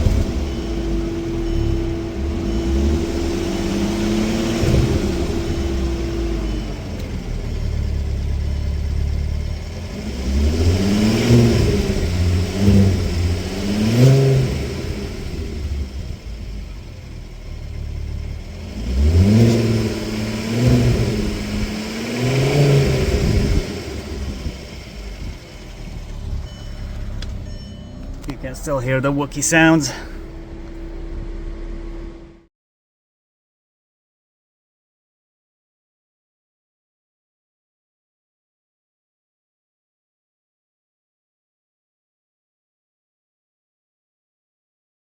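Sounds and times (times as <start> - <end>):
car engine idling and revving: 0.0 - 32.5.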